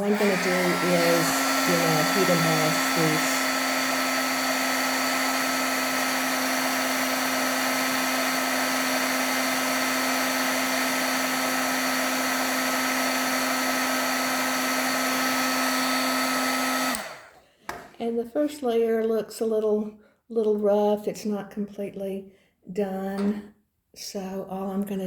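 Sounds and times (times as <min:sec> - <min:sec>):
heat tool fan humming and whining: 0:00.0 - 0:07.8.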